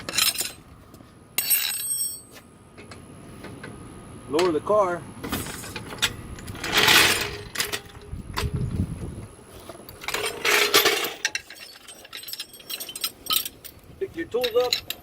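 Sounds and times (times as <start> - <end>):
metal clicks and clinks: 10.0 - 15.0.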